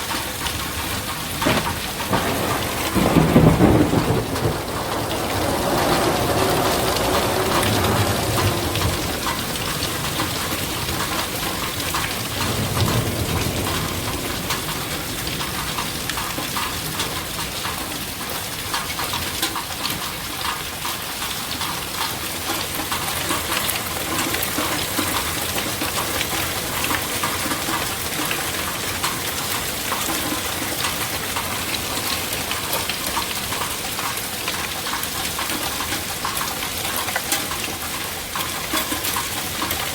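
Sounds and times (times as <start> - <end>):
heavy rain: 0.0 - 39.9
thunder rumble: 0.9 - 17.5.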